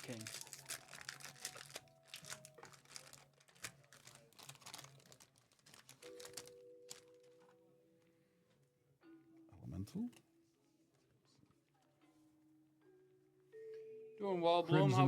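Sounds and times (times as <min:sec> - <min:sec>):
cards and wrappers rustling: 0:00.0 - 0:07.6.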